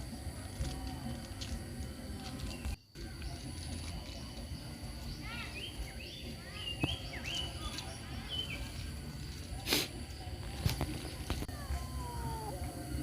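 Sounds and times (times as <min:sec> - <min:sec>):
outdoor background noise: 0:00.0 - 0:13.0
small bird chirping: 0:02.4 - 0:09.5.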